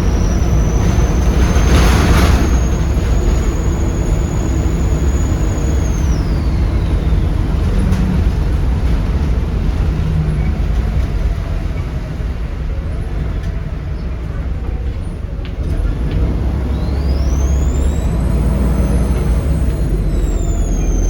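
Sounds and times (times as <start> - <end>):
turbo whistle: 0.0 - 8.4, 16.3 - 21.0
bus diesel engine rumbling: 0.0 - 21.0.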